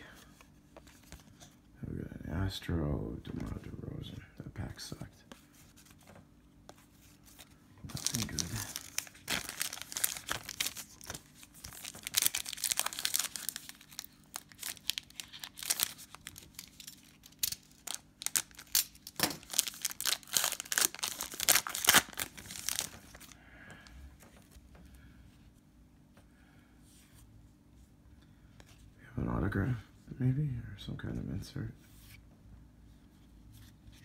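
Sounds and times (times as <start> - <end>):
wrapper tearing and crinkling: 7.9 - 23.4.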